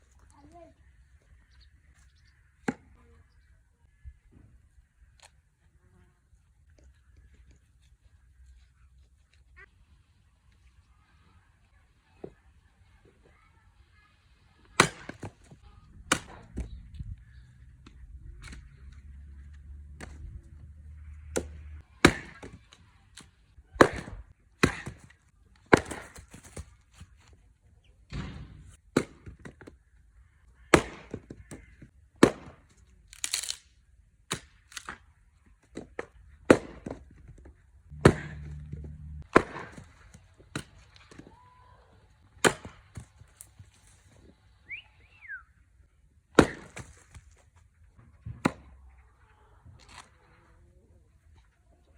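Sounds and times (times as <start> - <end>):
axe chopping wood: 14.8 - 16.8, 19.9 - 20.4, 21.2 - 22.7, 23.8 - 26.7, 28.1 - 29.7, 30.7 - 31.6, 32.2 - 33.5, 35.8 - 41.3, 42.4 - 43.4, 46.4 - 47.3, 48.3 - 48.8
wood cracking: 33.1 - 33.7.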